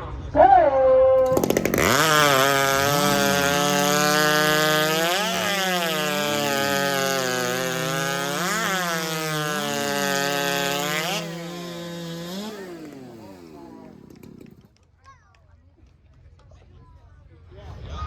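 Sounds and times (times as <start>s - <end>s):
chainsaw cutting through log: 1.2s - 14.7s.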